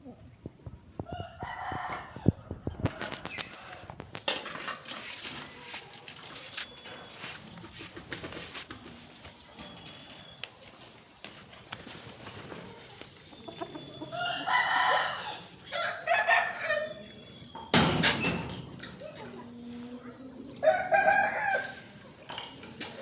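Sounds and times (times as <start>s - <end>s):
roosters crowing: 13.4s - 17.3s, 20.6s - 22.0s.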